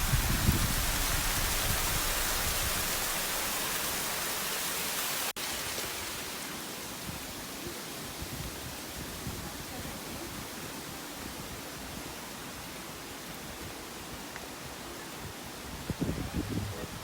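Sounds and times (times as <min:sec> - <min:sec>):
waterfall rushing: 0:00.0 - 0:08.0.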